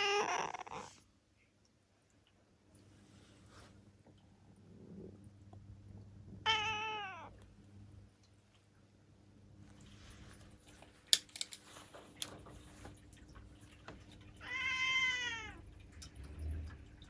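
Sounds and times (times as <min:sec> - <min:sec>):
cat meowing: 0:06.5 - 0:07.3, 0:14.4 - 0:15.6
sharp clicks: 0:11.2 - 0:12.4.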